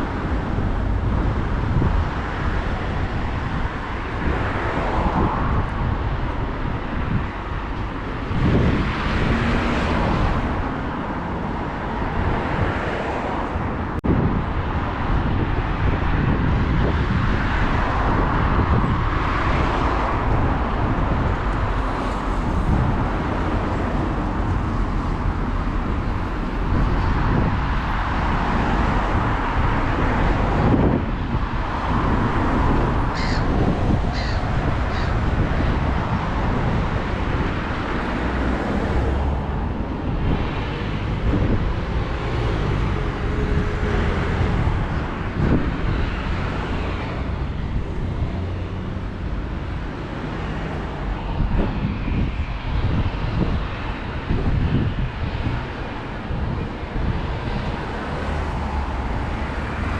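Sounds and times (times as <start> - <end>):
road traffic: 0.0 - 59.9
wind buffeting microphone: 0.0 - 59.9
harsh bird calls: 33.1 - 35.2.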